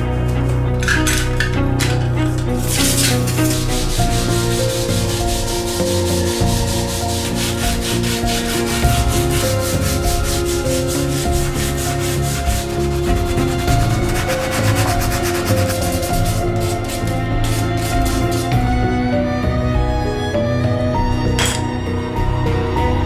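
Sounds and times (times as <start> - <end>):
sandpaper rubbing on metal: 0.3 - 18.7.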